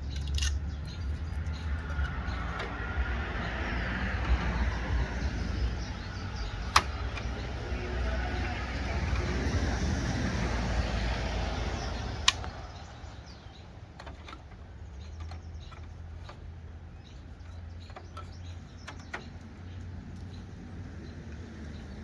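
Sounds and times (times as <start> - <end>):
light clicks: 4.1 - 9.3, 11.7 - 13.0.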